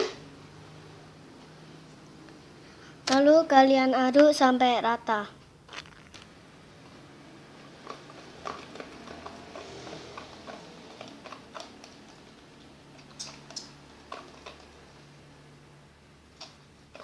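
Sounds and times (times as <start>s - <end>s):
stirrer scraping a container: 7.6s - 15.0s.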